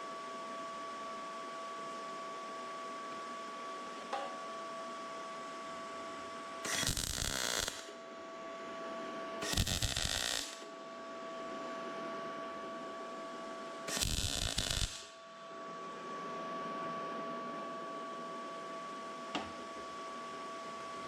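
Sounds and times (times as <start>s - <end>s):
welding arc crackling: 6.7s - 7.9s, 9.4s - 10.7s, 13.9s - 15.2s.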